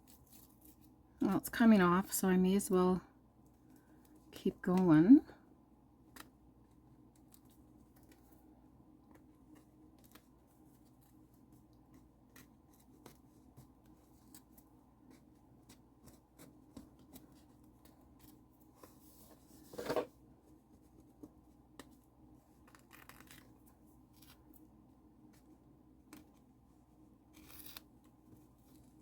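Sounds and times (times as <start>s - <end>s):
paper being peeled and scraped: 27.3s - 27.9s.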